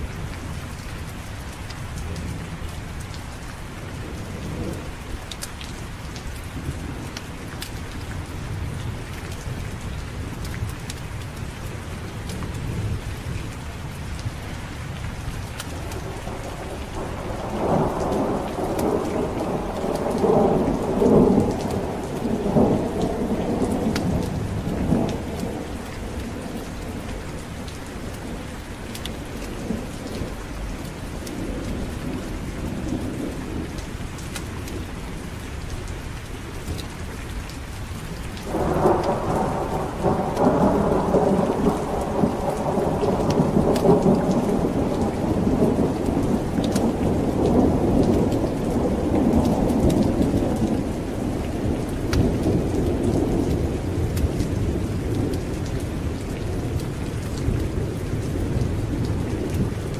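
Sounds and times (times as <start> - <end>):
heavy rain: 0.0 - 59.9
thunder rumbling: 15.5 - 34.9, 38.1 - 59.9.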